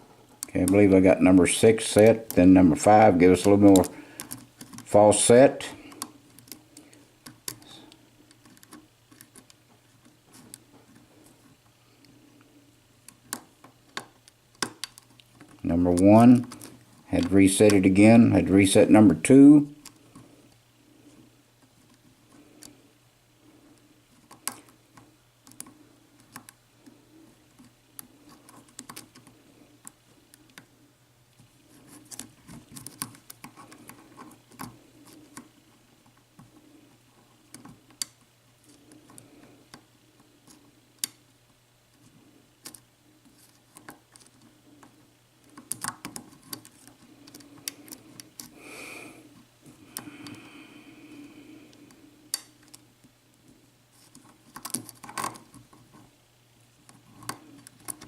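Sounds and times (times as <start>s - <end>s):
lock pick clicking and scraping: 31.9s - 35.5s, 43.5s - 48.6s, 54.0s - 56.0s, 56.9s - 58.0s.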